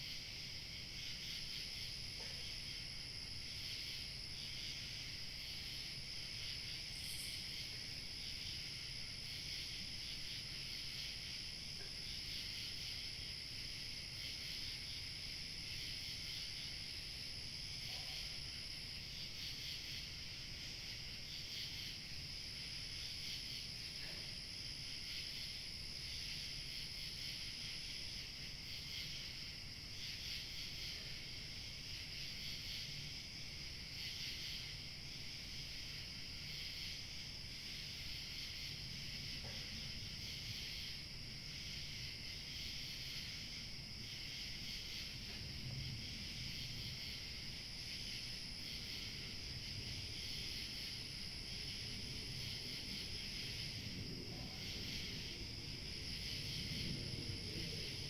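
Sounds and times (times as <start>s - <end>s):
crickets chirping: 0.0s - 58.0s
high steady insect tone: 0.0s - 58.0s
low wind rumble: 51.8s - 58.0s.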